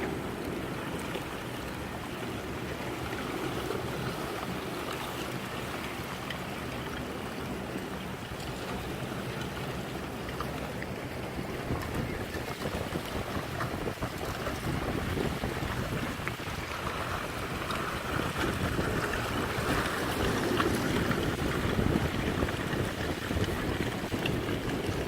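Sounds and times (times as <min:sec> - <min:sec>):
gusty wind buffeting microphone: 0:10.9 - 0:25.0.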